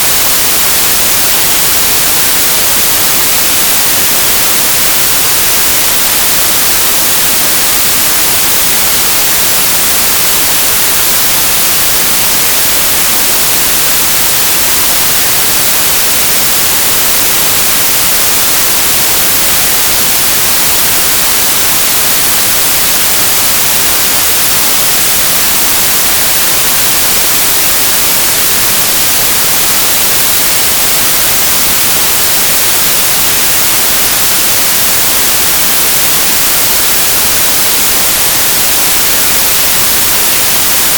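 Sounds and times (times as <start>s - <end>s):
static hiss: 0.0s - 40.9s.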